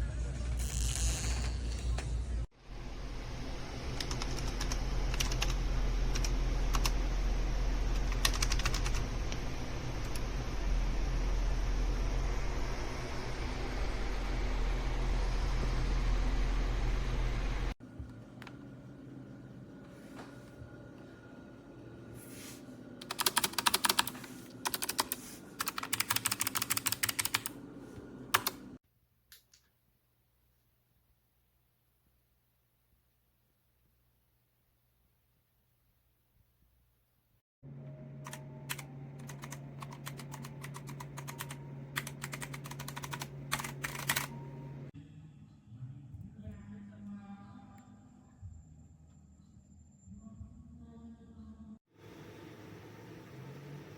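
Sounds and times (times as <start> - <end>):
low steady hum: 1.7 - 23.0, 37.6 - 53.9
mechanical keyboard typing: 4.0 - 7.0, 7.9 - 9.0, 23.0 - 27.6, 28.3 - 28.6, 38.3 - 44.4.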